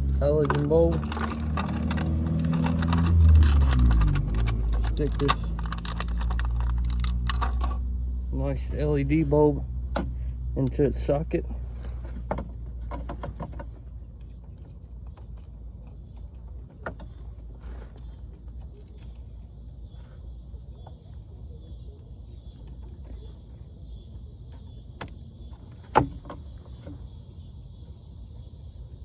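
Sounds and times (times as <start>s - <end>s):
low steady rumble: 0.0s - 29.0s
plastic parts clicking: 0.4s - 7.8s.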